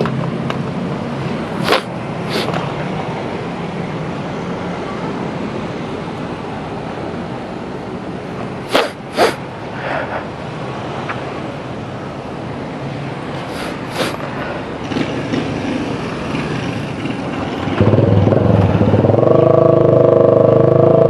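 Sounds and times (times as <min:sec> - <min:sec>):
motorcycle running in traffic: 0:00.0 - 0:09.5, 0:12.9 - 0:21.0
short sharp bursts: 0:01.6 - 0:02.6, 0:08.6 - 0:10.2, 0:13.4 - 0:14.2.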